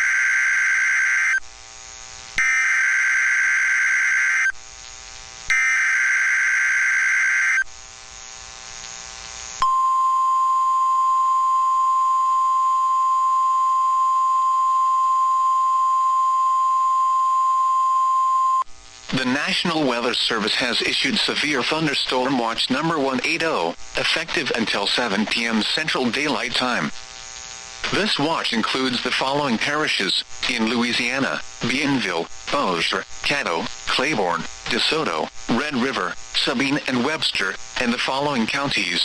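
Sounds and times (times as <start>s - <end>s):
steady warning alarm tone: 0.0s - 1.4s, 2.4s - 4.6s, 5.5s - 7.7s.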